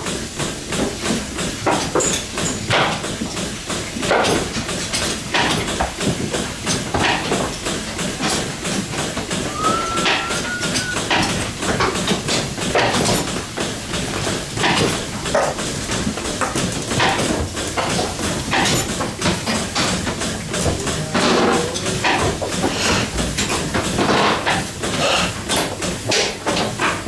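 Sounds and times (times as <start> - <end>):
goats calling: 9.4 - 11.4
short squeak: 9.5 - 11.4.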